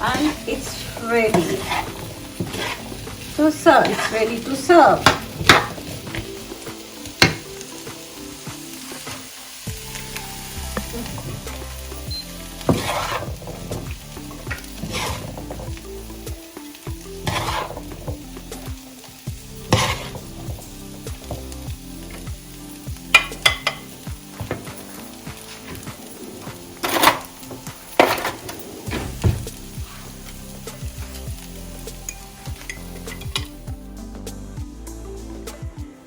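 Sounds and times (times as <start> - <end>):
oil sizzling: 0.0 - 36.0
spoon scraping pan: 0.1 - 6.2, 12.5 - 15.7, 17.2 - 18.1, 19.6 - 20.6.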